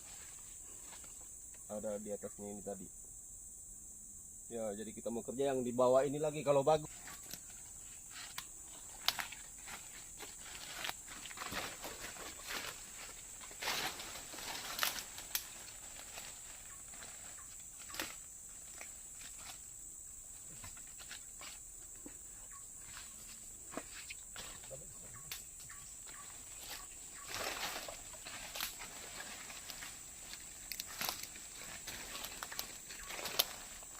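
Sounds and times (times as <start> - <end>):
insects droning: 0.0 - 33.9
footsteps through undergrowth: 6.8 - 33.9.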